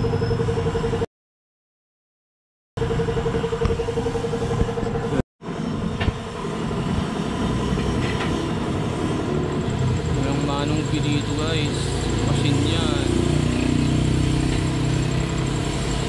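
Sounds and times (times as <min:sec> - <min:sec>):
tire-changer motor hum: 0:02.8 - 0:05.2, 0:06.1 - 0:16.0
workshop noise: 0:02.9 - 0:16.0.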